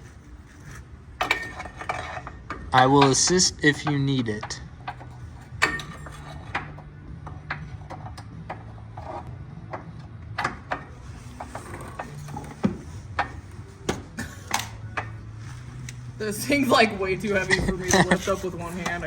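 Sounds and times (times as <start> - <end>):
tools and metal parts clicking: 0.5 - 15.3.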